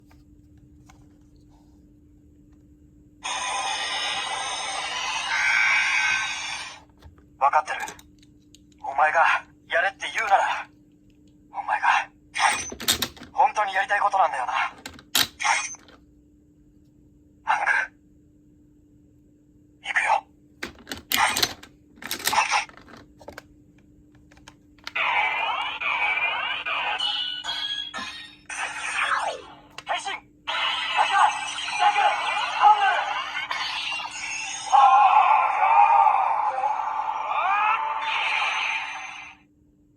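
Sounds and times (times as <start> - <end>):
toy sound effect from speaker: 14.6 - 15.9, 24.9 - 35.0.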